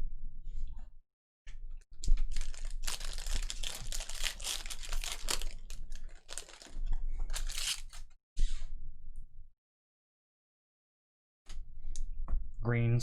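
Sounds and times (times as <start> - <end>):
wrappers tearing and crinkling: 2.0 - 8.1.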